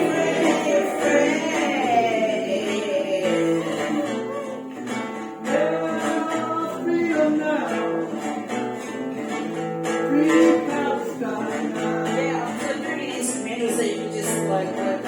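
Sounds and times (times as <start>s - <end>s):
voices singing along: 0.0s - 8.2s
guitar playing: 0.0s - 15.0s.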